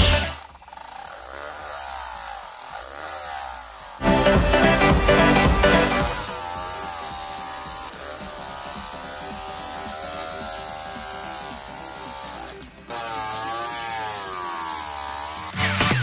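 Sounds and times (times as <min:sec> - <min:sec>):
small drill motor buzzing whine: 0:00.0 - 0:16.0
faint music: 0:04.0 - 0:16.0.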